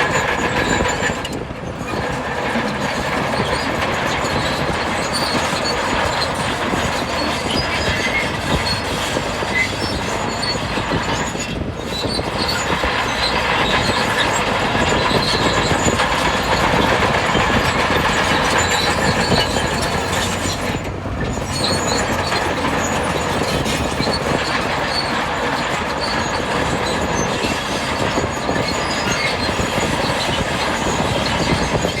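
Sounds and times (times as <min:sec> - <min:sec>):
bulldozer engine running under load: 0:00.0 - 0:32.0
steel crawler tracks clanking: 0:00.0 - 0:32.0.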